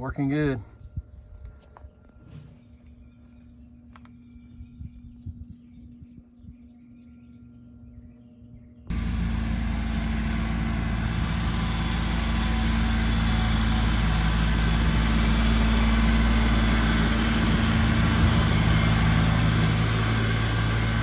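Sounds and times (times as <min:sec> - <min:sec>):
motor humming: 0:08.9 - 0:21.0.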